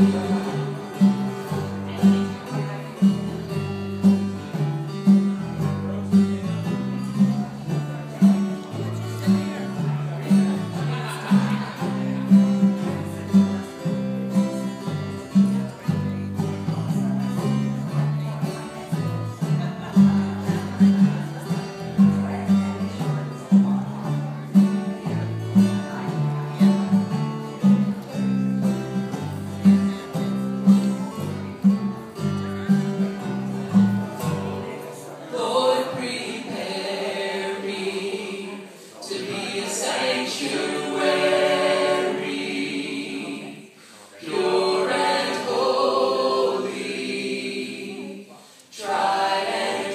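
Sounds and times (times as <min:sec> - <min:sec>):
vocal group singing gospel: 0:00.0 - 0:01.3, 0:34.2 - 0:49.9
plucked bass line: 0:00.0 - 0:14.3
guitar accompaniment: 0:00.0 - 0:49.9.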